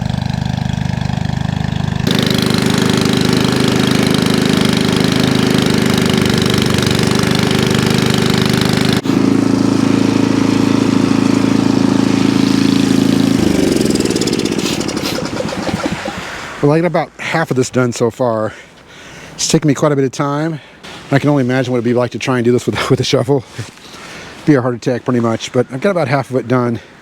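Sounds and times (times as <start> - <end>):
snowblower engine running: 0.0 - 16.6
rushing snow noise: 2.0 - 16.9.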